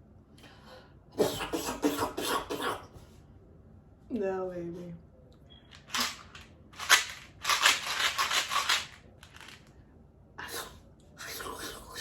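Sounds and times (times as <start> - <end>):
dry rattling: 5.9 - 9.7.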